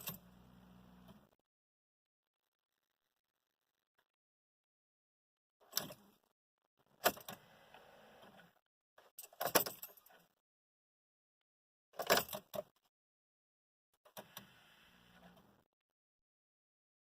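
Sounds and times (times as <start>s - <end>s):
faint steady hum: 0.0s - 1.3s.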